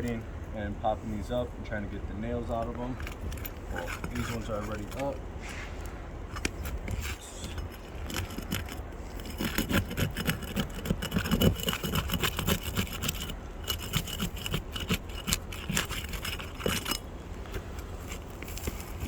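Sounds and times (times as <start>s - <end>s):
tool scraping under shingles: 2.3s - 19.0s.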